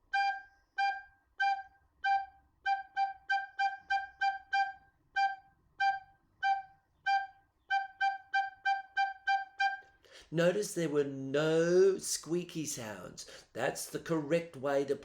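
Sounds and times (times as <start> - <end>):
recorder playing notes: 0.0 - 10.0.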